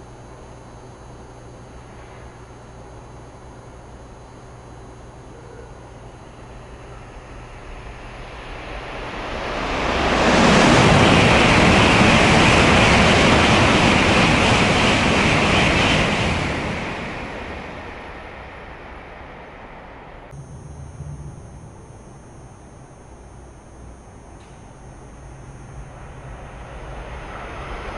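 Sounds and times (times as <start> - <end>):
high-speed train rushing past: 6.3 - 27.9.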